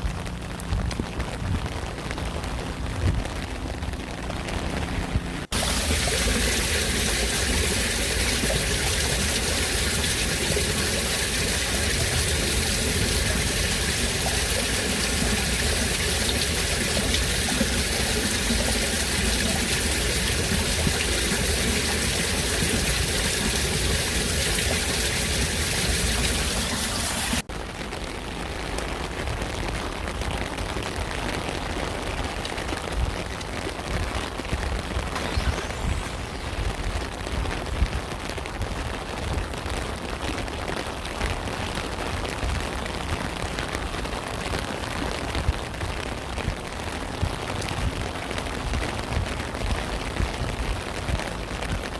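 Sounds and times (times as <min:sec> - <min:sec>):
heavy rain: 0:00.0 - 0:51.9
water pouring and running: 0:04.4 - 0:27.5, 0:35.0 - 0:37.8.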